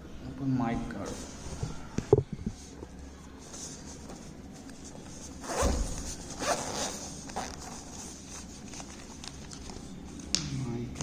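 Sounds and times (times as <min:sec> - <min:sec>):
microphone handling noise: 0:01.6 - 0:02.8
zipper-like rasping: 0:05.2 - 0:08.6.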